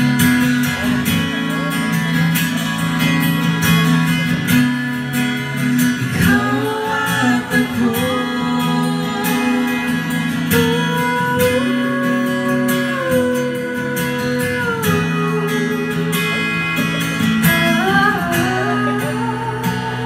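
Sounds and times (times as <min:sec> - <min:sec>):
strummed acoustic guitar: 0:00.0 - 0:20.0.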